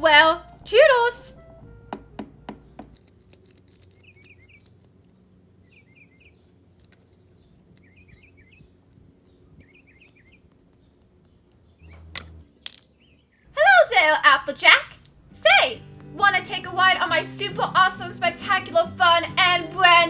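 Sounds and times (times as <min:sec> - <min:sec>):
low steady background noise: 0:00.0 - 0:20.0
small birds chirping: 0:02.3 - 0:13.6.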